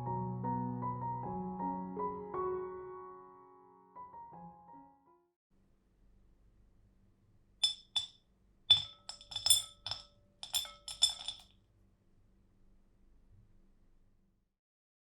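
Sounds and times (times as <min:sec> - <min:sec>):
kitchenware clinking: 0:07.6 - 0:08.1, 0:08.7 - 0:11.4.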